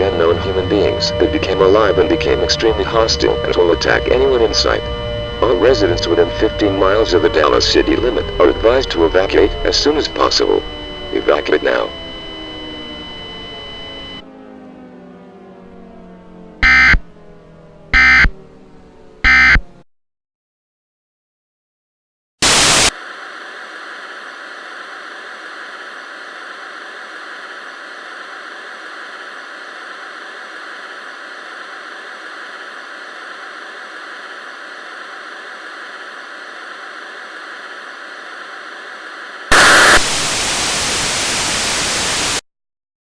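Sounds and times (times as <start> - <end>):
static bursts: 0.7 - 13.8, 22.4 - 42.4
static hiss: 22.4 - 42.4.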